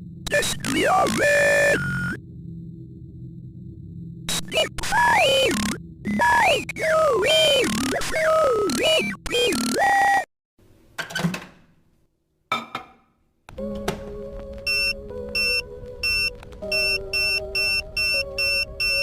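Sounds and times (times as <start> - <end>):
electronic hum: 0.0 - 10.2, 14.7 - 19.0
electronic beeping: 0.3 - 2.2, 4.3 - 9.8, 14.7 - 19.0.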